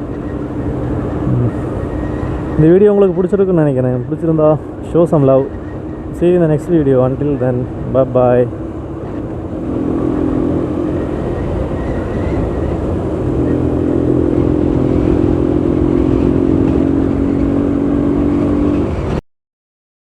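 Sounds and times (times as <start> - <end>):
motorcycle engine running: 8.5 - 18.4.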